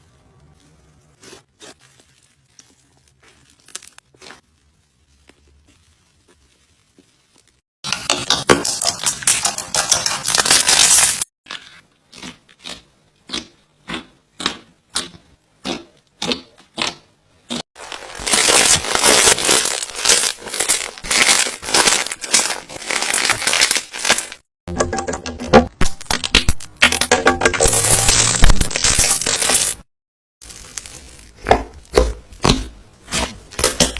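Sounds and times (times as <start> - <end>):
slime crackling when squeezed: 17.8 - 24.4.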